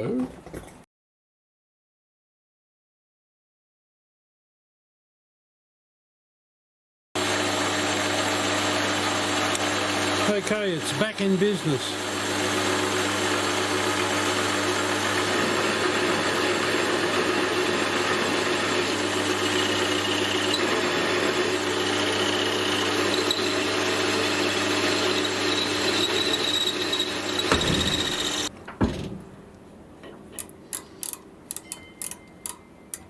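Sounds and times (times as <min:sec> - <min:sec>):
metal lathe running: 0:07.2 - 0:28.5.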